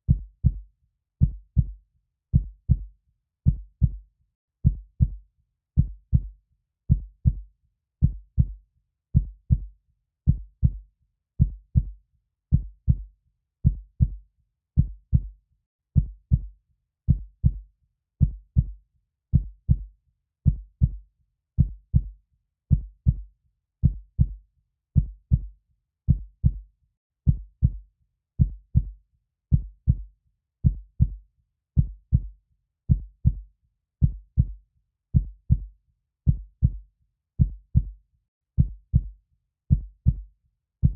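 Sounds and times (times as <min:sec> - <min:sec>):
heartbeat thumps: 0:02.4 - 0:02.9, 0:03.5 - 0:04.0, 0:06.9 - 0:07.4, 0:08.0 - 0:08.6, 0:10.3 - 0:10.8, 0:11.4 - 0:11.9, 0:12.5 - 0:13.0, 0:16.0 - 0:16.5, 0:17.1 - 0:17.6, 0:20.5 - 0:21.0, 0:21.6 - 0:22.1, 0:22.7 - 0:23.2, 0:23.8 - 0:24.4, 0:25.0 - 0:25.5, 0:26.1 - 0:26.6, 0:27.3 - 0:27.8, 0:28.4 - 0:28.9, 0:29.5 - 0:30.0, 0:30.6 - 0:31.2, 0:31.8 - 0:32.3, 0:32.9 - 0:33.4, 0:34.0 - 0:34.6, 0:35.2 - 0:35.7, 0:36.3 - 0:36.8, 0:37.4 - 0:38.0, 0:38.6 - 0:39.1, 0:39.7 - 0:40.2.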